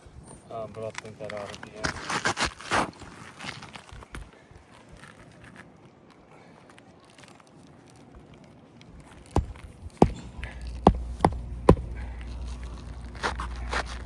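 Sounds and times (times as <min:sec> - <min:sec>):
hammer blows on nails: 0:09.4 - 0:14.0.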